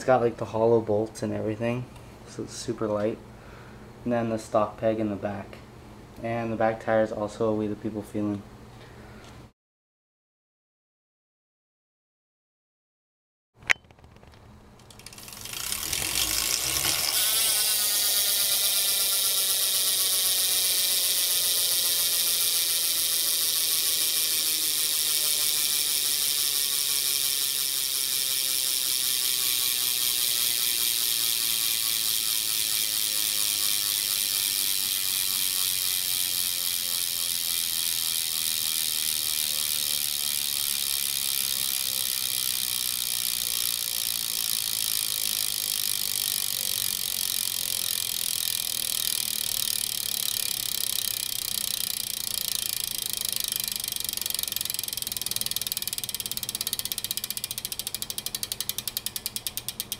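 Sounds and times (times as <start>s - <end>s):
bicycle hub clicking: 13.7s - 59.9s.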